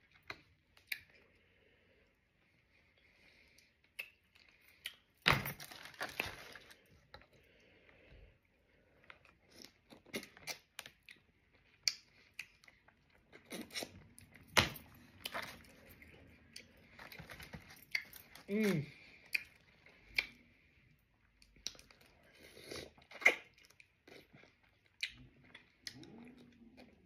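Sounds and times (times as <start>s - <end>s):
person chewing: 8.9s - 27.0s.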